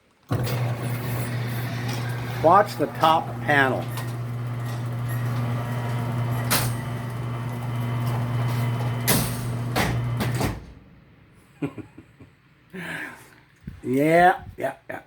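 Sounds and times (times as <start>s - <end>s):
garage door opener humming: 0.3s - 10.8s
door clunks: 8.0s - 10.8s.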